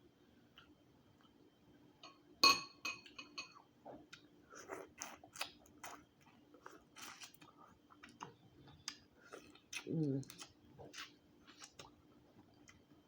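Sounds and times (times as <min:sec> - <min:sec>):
chewing: 0:03.9 - 0:13.0.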